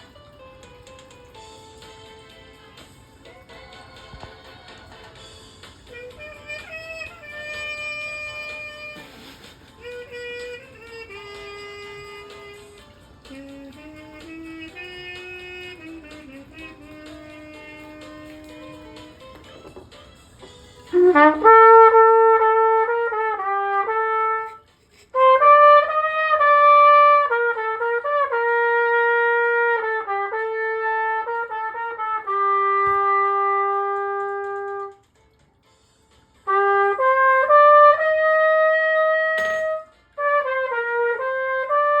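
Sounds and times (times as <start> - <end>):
trumpet playing: 5.8 - 19.8, 20.8 - 35.0, 36.4 - 42.0.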